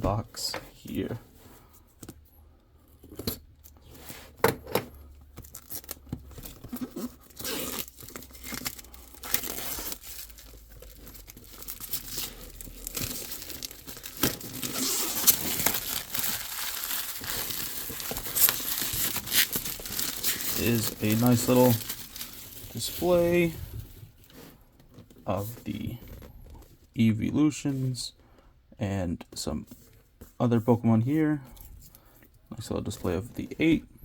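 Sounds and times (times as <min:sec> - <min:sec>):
packaging tearing and crinkling: 0:05.4 - 0:23.5.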